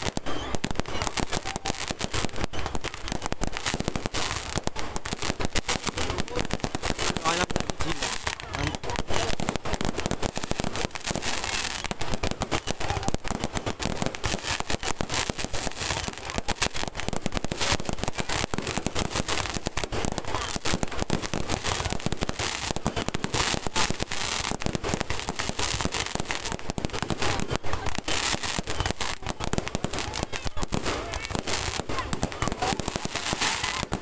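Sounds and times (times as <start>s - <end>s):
fireworks crackling pops: 0.0s - 34.0s.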